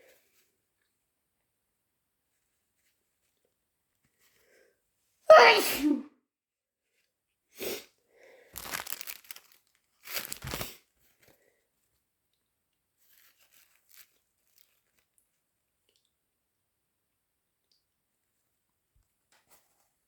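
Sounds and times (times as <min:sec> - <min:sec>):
tissue paper rustling and crumpling: 0:08.6 - 0:11.3, 0:13.0 - 0:15.1.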